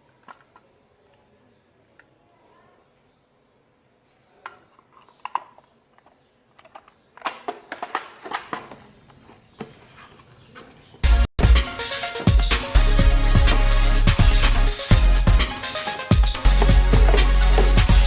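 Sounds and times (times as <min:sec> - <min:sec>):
small power tool handled: 0:04.8 - 0:09.7
music with heavy beat: 0:11.0 - 0:18.0.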